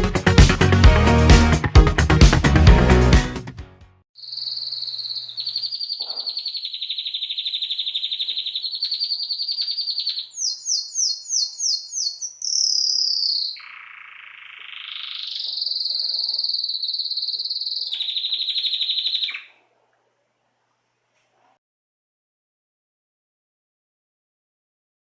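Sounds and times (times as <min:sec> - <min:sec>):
canary singing: 0:04.2 - 0:19.7.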